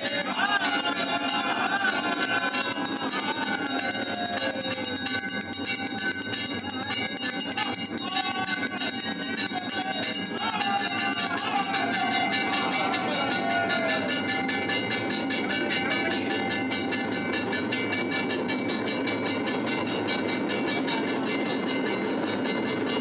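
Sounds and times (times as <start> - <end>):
fast regular beat: 0.0 - 12.7
voices chanting: 0.0 - 17.2
temple bells clanging: 0.0 - 23.0.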